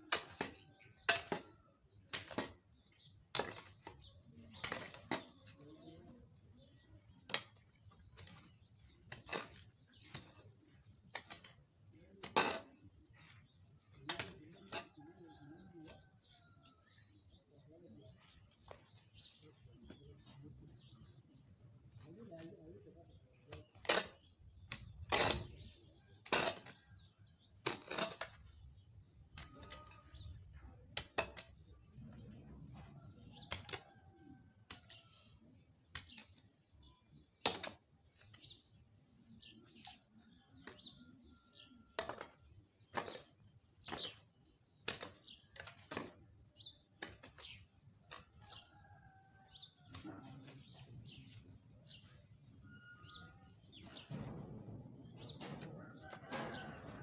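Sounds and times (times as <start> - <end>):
birds chirping faintly: 31.7 - 56.8.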